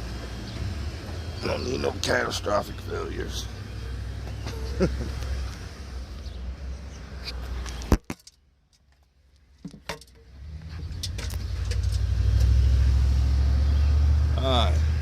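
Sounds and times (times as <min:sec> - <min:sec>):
diesel truck engine rumbling: 0:00.0 - 0:07.9, 0:10.0 - 0:15.0
sharp clunks: 0:09.6 - 0:10.4.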